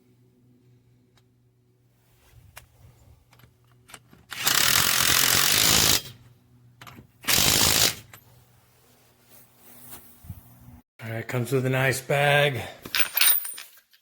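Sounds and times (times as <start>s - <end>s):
impact wrench rattling whir: 4.1s - 6.2s, 7.2s - 8.2s.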